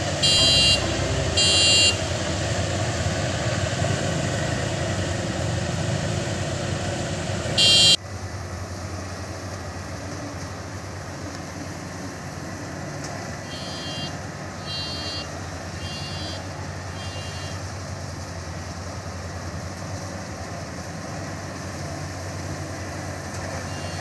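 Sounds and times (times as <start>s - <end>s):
combine harvester running: 0.0s - 24.0s
high-pitched warning beeps: 0.2s - 2.1s, 7.6s - 8.0s, 13.5s - 16.4s.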